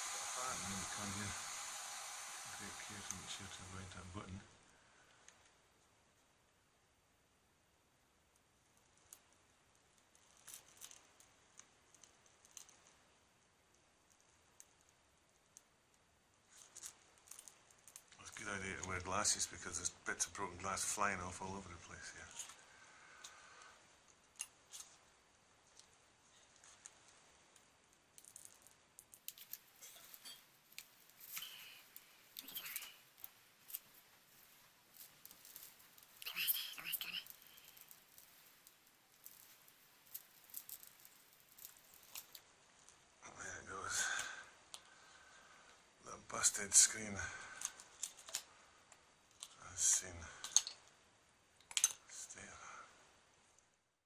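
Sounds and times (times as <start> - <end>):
glass screen clicking and crackling: 8.3 - 21.0, 22.2 - 43.1, 47.5 - 52.1
glass scraping: 29.4 - 33.1
glass pieces snapping: 50.4 - 50.8, 51.6 - 52.0.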